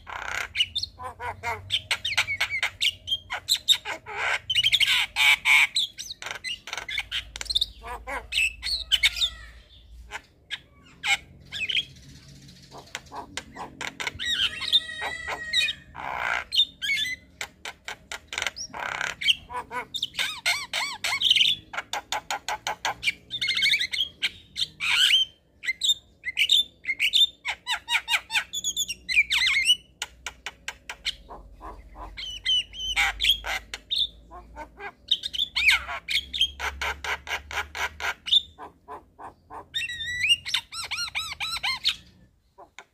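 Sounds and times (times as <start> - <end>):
mynas calling: 0.0 - 17.4, 31.0 - 42.9.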